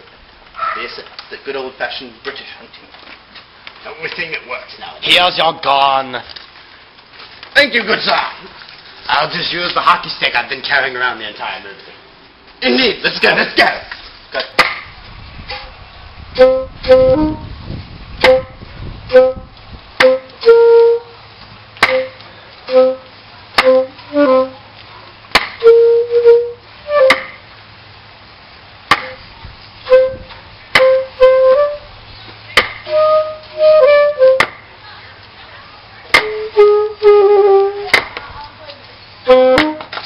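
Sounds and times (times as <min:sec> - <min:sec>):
flute-like woodwind tune: 0:16.4 - 0:17.6, 0:18.2 - 0:21.2, 0:21.8 - 0:24.7, 0:25.6 - 0:27.4, 0:29.8 - 0:32.0, 0:32.8 - 0:34.6, 0:36.1 - 0:38.0, 0:39.2 - 0:39.9.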